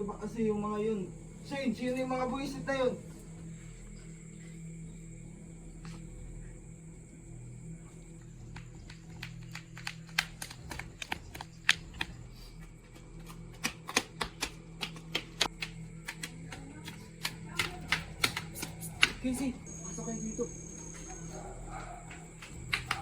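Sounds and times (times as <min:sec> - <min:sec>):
steady low hum: 0:00.0 - 0:23.0
sharp taps and clicks: 0:08.5 - 0:12.2, 0:12.9 - 0:19.3, 0:22.4 - 0:23.0.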